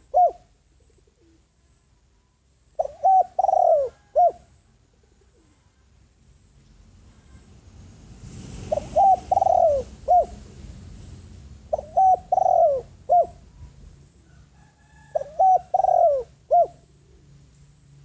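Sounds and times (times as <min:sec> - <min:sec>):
dove cooing: 0:00.0 - 0:01.6, 0:02.8 - 0:05.8, 0:08.7 - 0:10.4, 0:11.7 - 0:17.4.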